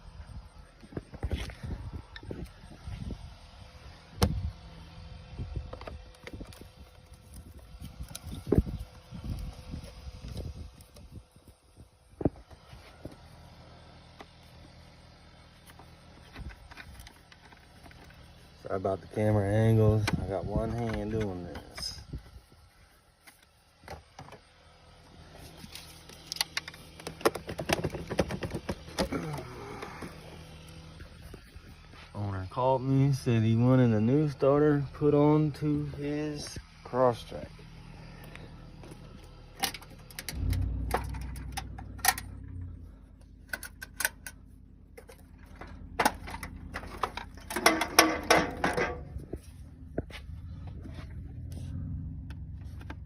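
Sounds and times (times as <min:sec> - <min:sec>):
faint steady hum: 0:00.0 - 0:53.0
metal tools clinking: 0:43.5 - 0:49.2.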